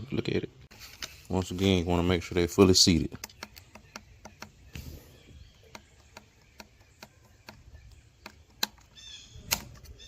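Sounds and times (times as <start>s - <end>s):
faint ticking: 3.0s - 8.9s.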